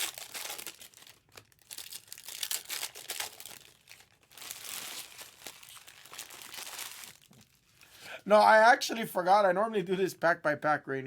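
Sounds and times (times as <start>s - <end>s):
card pack wrappers crinkling: 0.0s - 7.9s.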